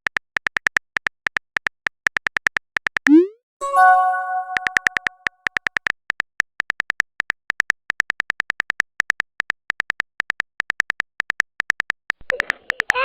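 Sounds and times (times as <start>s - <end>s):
phone keyboard typing clicks: 4.3s - 13.0s.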